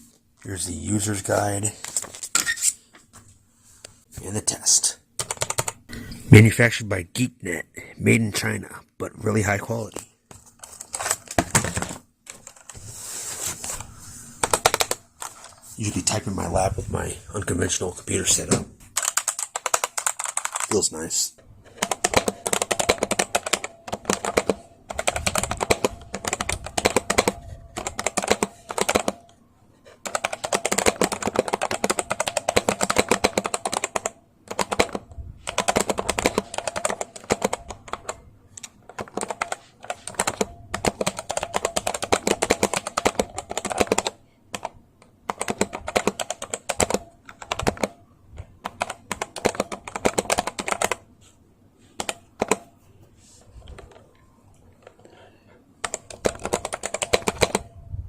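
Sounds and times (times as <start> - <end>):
mechanical keyboard typing: 5.2 - 5.8, 10.6 - 12.8, 14.4 - 15.3, 19.0 - 20.8, 21.7 - 29.4, 30.0 - 51.1, 52.0 - 52.7, 55.8 - 57.7.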